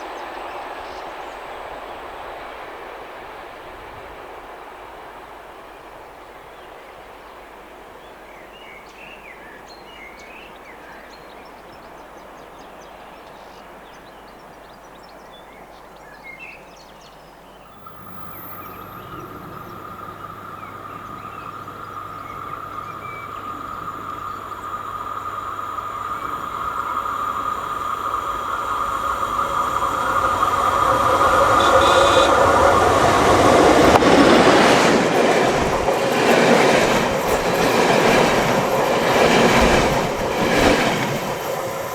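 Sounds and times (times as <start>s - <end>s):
train rumble and rail noise: 0.0s - 15.2s, 17.6s - 41.9s
faint bird chirps: 16.4s - 27.4s
electric train whine and hum: 17.6s - 41.9s.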